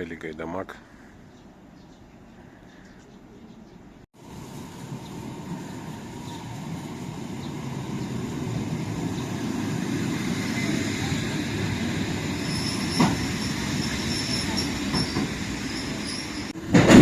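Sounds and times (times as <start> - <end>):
train rumbling on rails: 4.2 - 17.0
high wheel squeal: 9.9 - 16.6.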